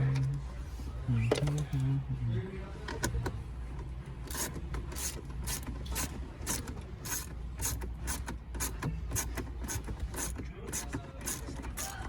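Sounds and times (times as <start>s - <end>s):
hand ratchet pawl rasping: 4.3s - 12.0s.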